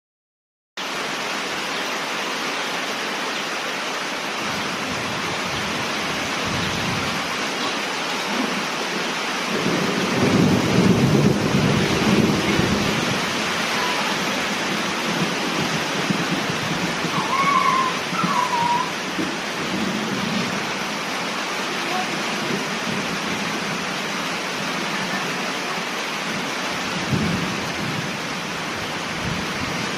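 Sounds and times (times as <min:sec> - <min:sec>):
heavy rain: 0:00.8 - 0:29.9
thunder rolling: 0:09.5 - 0:20.6, 0:27.0 - 0:28.2.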